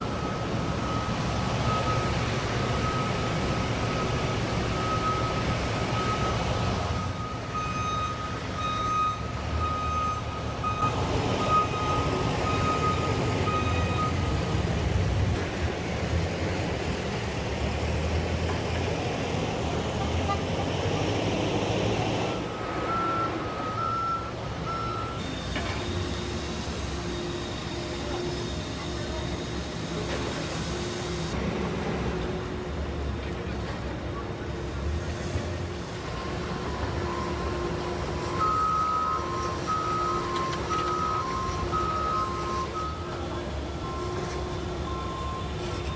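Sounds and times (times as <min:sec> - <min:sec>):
heavy equipment engine rumble: 0:00.0 - 0:45.9
reversing alarm beeping: 0:00.1 - 0:14.5, 0:22.3 - 0:31.2, 0:36.1 - 0:45.9
higher-pitched alarm beeping: 0:38.2 - 0:43.2.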